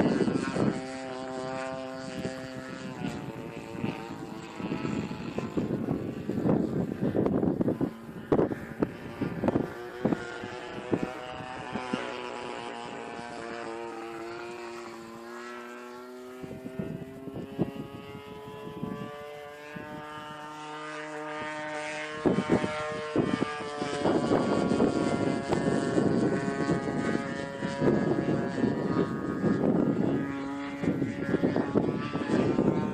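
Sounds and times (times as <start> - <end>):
propeller engine running: 0.0 - 32.9
wind buffeting microphone: 0.0 - 32.9.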